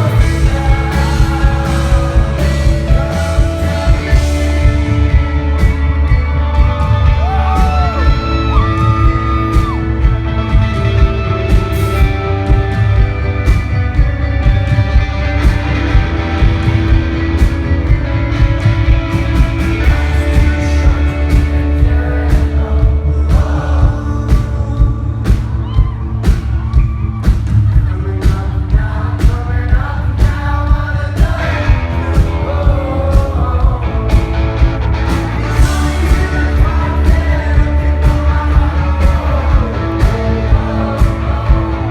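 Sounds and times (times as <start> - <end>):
man singing: 0.0 - 13.6, 19.3 - 26.4, 27.2 - 41.9
live rock band playing: 0.0 - 41.9
crowd shouting: 6.4 - 10.0.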